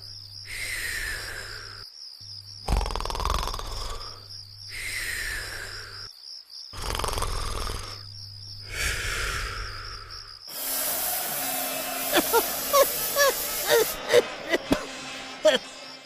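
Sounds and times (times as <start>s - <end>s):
cartoon snoring: 2.6s - 6.1s, 6.7s - 14.8s
falling whistle: 10.5s - 14.2s.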